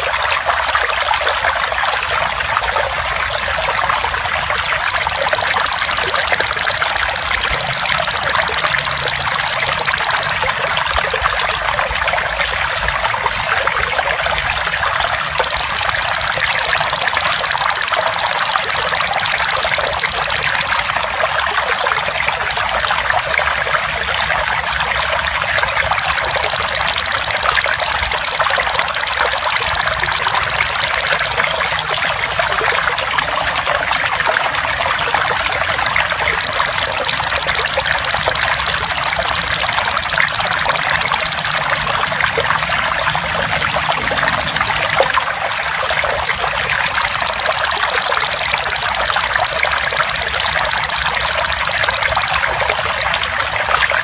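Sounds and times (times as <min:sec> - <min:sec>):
trickling water: 0:00.0 - 0:54.0.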